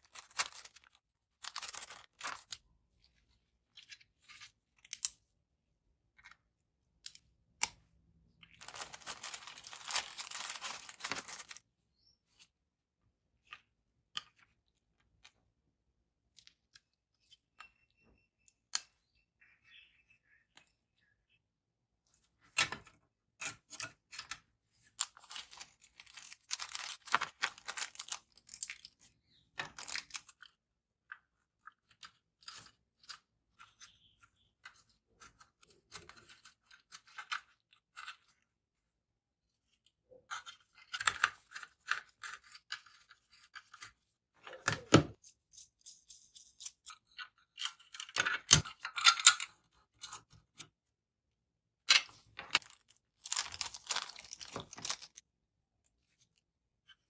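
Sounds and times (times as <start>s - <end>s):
packaging crinkling: 8.6s - 11.6s, 52.6s - 55.2s.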